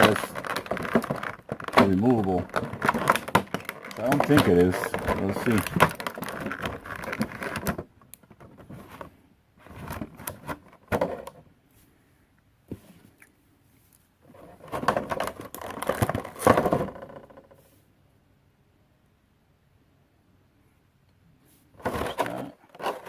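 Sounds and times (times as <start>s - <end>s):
plastic packaging rustling: 0.0s - 11.3s, 14.3s - 17.0s, 21.8s - 23.0s.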